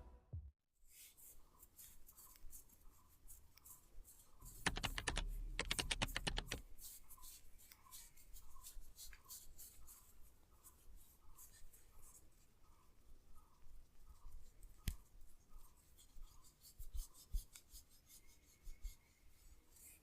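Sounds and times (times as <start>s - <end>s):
rapid taps: 4.4s - 6.6s
light tapping and clicking: 4.5s - 6.6s.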